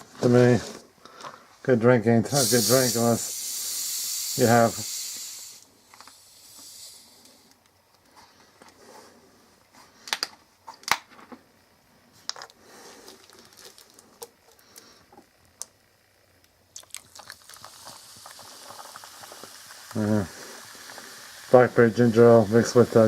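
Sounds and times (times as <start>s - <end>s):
soda fizzing over ice: 2.3s - 5.6s, 16.8s - 23.0s.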